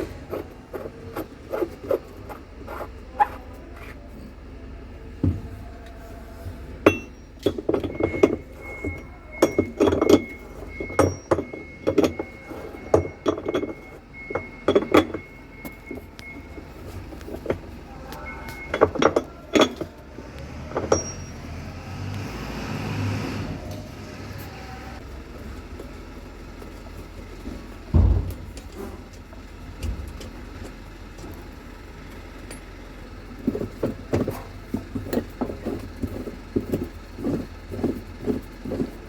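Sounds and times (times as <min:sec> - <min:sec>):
faint steady high tone: 0:05.8 - 0:19.8
hard objects clinking and knocking: 0:06.8 - 0:21.5.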